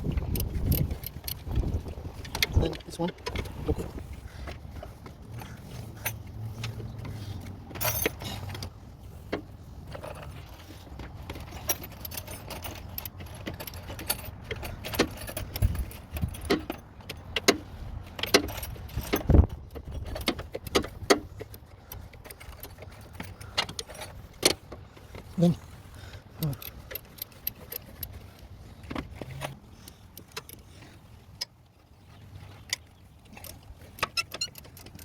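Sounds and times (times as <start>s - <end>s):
metal clanks: 0.0s - 25.3s
metal tools clinking on engine: 0.0s - 31.6s, 32.3s - 35.0s.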